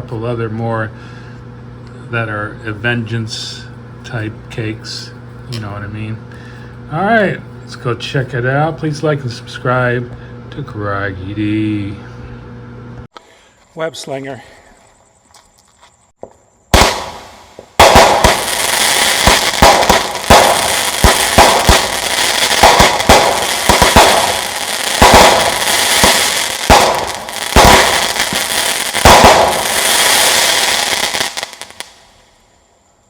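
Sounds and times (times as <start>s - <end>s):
sharp firework bang: 16.7s - 32.0s
firework launch shots: 16.7s - 32.4s
firework crackle: 16.7s - 32.6s.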